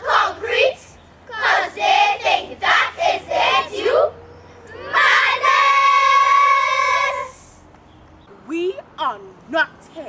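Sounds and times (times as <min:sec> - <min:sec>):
children's choir chanting: 0:00.0 - 0:07.4
children's choir singing high note: 0:00.0 - 0:07.5.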